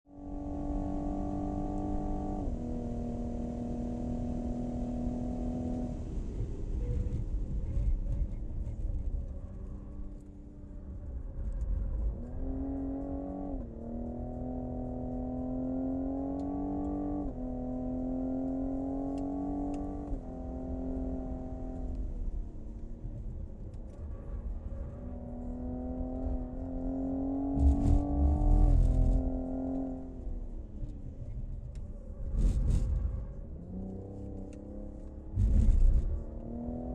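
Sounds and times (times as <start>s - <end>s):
car engine revving with upshifts: 0.1s - 10.8s, 11.4s - 36.9s.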